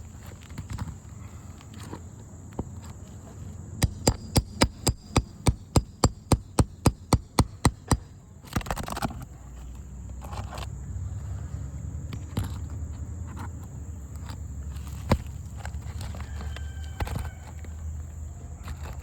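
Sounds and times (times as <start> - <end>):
hammer striking: 3.8 - 8.1.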